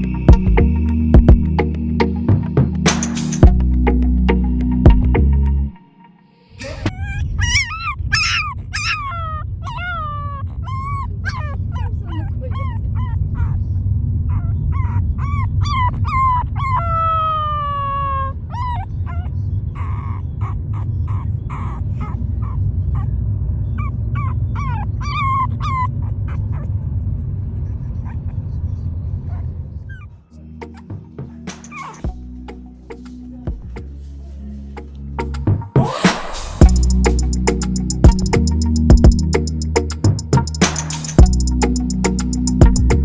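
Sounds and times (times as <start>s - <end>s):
puppy yelping and whimpering: 6.6s - 26.8s, 29.3s - 30.2s, 31.5s - 32.2s
puppy howl: 6.7s - 13.6s, 14.3s - 23.2s, 23.8s - 26.7s, 31.6s - 32.1s.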